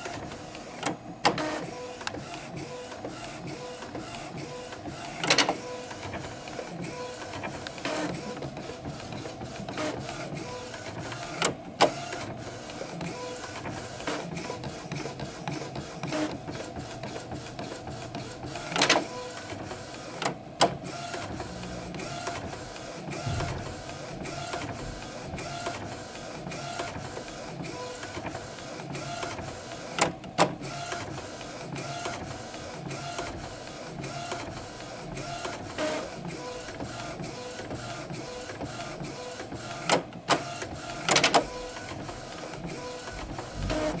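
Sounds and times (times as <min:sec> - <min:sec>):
printer mechanism whirring and clicking: 0:00.0 - 0:44.0
loud sharp printer knocks: 0:20.6 - 0:26.1, 0:43.2 - 0:44.0.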